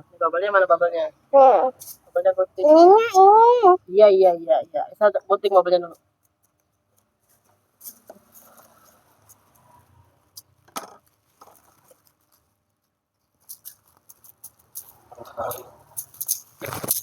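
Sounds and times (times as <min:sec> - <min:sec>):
plastic crinkling and rustling: 0:06.5 - 0:17.0.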